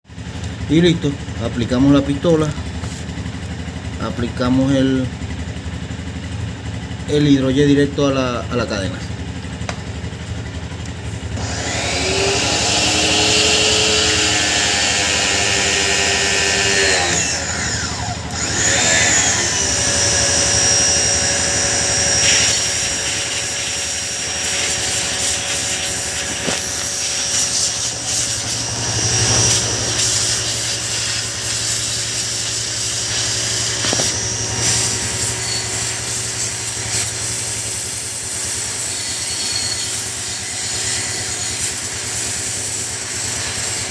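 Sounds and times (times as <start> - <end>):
pressure washer motor hum: 9.1 - 43.9.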